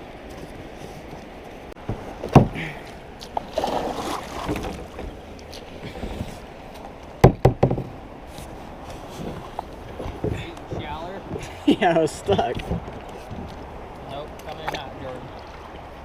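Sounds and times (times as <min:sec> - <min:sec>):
water sloshing: 0:00.0 - 0:16.0
paddle knocking on kayak hull: 0:07.2 - 0:08.0.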